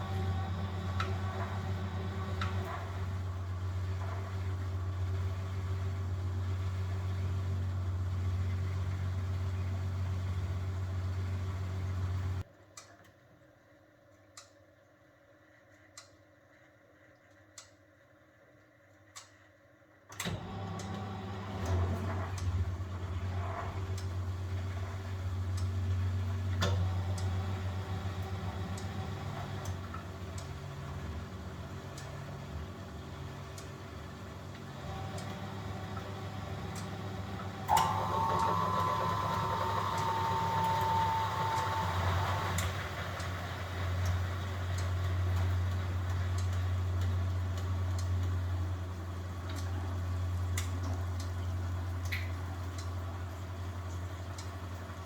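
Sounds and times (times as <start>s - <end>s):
washing machine drum humming: 0.0s - 12.4s, 20.1s - 55.0s
faint ticking clicks: 28.2s - 30.8s, 31.8s - 49.8s, 50.4s - 53.0s, 53.8s - 55.0s.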